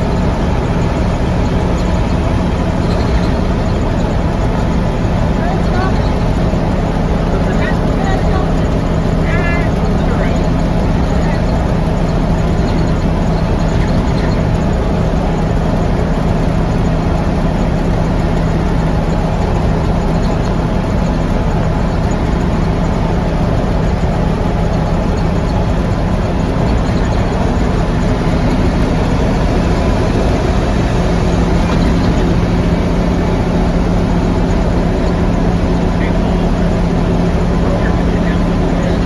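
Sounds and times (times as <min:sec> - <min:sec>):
truck diesel engine running: 0:00.0 - 0:39.0.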